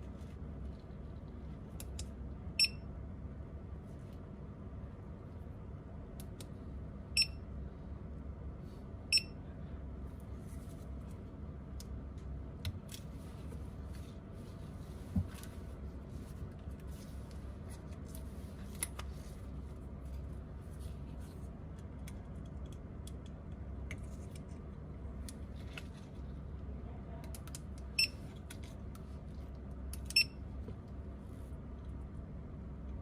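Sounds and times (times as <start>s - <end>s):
steady low hum: 0.0s - 33.0s
light clicks and taps of tools: 21.7s - 24.6s.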